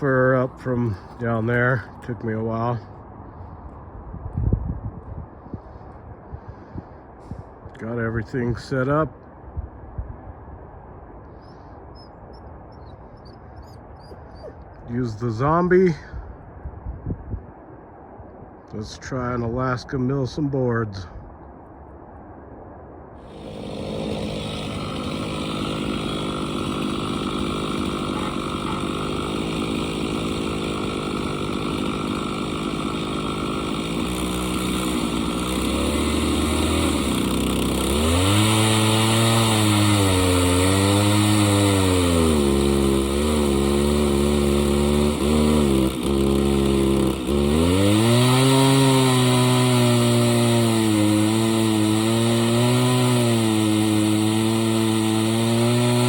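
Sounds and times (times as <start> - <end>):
chainsaw cutting log: 0.0 - 2.7, 23.2 - 56.0.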